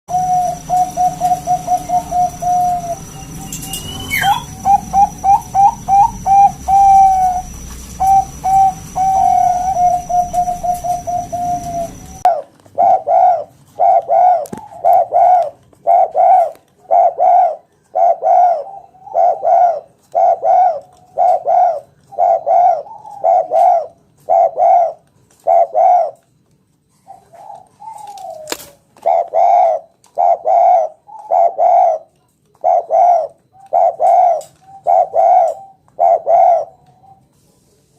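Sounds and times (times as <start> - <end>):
steady high tone: 0.1 - 12.3
dove cooing: 0.1 - 26.3, 26.9 - 37.4.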